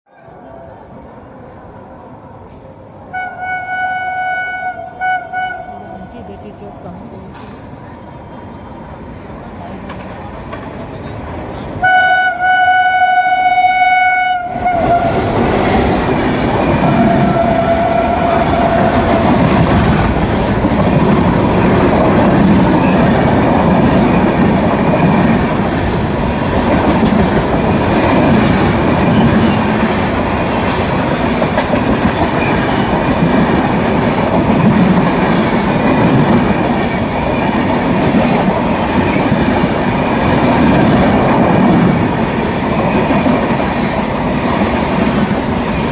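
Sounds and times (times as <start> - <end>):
train passing with clickety-clack: 0.1 - 45.9
train horn blast: 3.1 - 6.1, 11.8 - 15.3.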